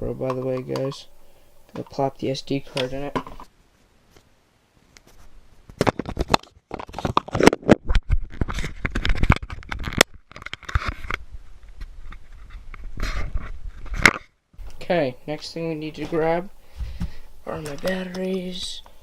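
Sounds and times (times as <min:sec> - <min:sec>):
plastic clicks and scrapes: 0:05.8 - 0:11.2.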